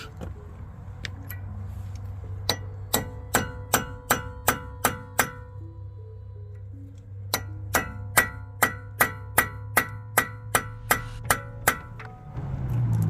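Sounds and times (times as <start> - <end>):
hammer striking metal punch: 2.4 - 5.6, 7.3 - 12.2.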